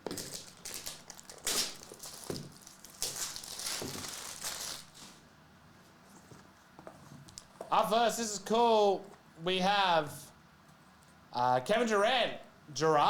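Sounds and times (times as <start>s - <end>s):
plastic wrapping crinkling and tearing: 0.0s - 5.2s.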